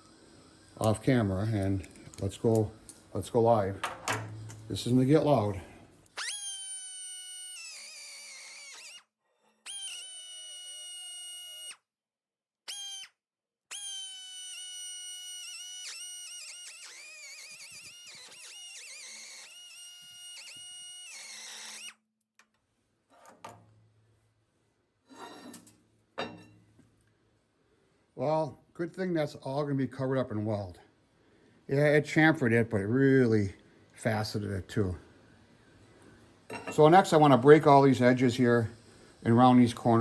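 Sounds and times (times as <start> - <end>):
die grinder whining on metal: 6.1 - 9.0, 9.7 - 11.8, 12.7 - 13.1, 13.7 - 22.0.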